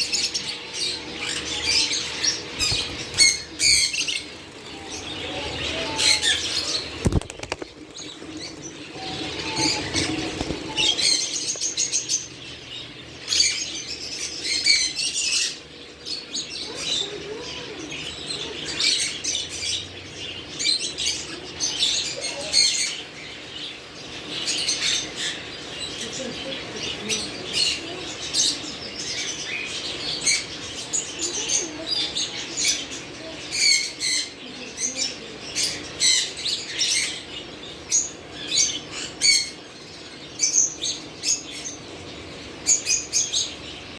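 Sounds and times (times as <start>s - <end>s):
wings fluttering: 1.9s - 12.2s.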